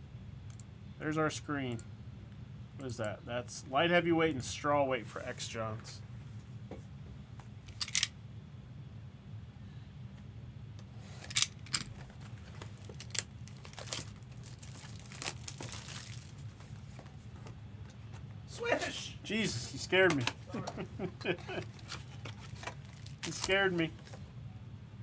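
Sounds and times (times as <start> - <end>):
steady low hum: 0.0 - 25.0
plastic wrapping tearing and crinkling: 11.2 - 17.0, 21.6 - 24.2.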